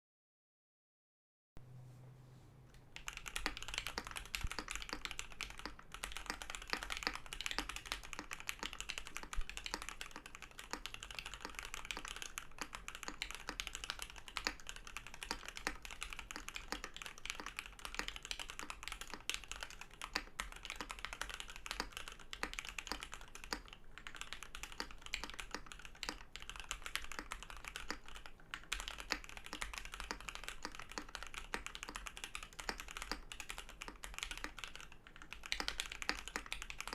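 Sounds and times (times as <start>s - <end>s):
steady low hum: 1.6s - 5.8s
fast mechanical keyboard typing: 3.0s - 36.9s.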